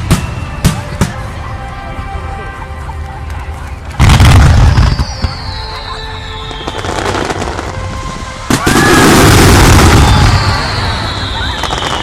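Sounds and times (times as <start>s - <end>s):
firework crackling: 0.0s - 1.6s, 3.0s - 12.0s
firework booms: 8.5s - 12.0s
high falling whistle: 8.5s - 12.0s.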